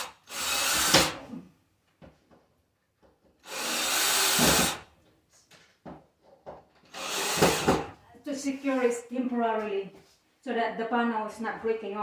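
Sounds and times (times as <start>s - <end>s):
cordless drill driving a screw: 0.0s - 1.2s, 3.4s - 4.8s, 6.9s - 7.9s.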